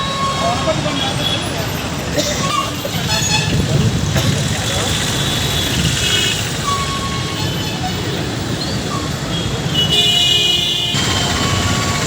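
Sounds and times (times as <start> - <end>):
road traffic noise: 0.0 - 12.0
vehicle horn: 9.3 - 11.8.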